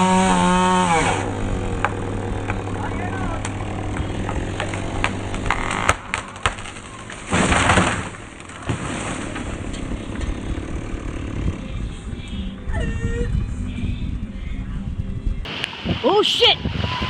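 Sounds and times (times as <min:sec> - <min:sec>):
chainsaw engine idling: 0:00.0 - 0:07.3, 0:08.1 - 0:12.6
falling tree crash: 0:00.0 - 0:11.4
wood cracking: 0:00.0 - 0:11.5.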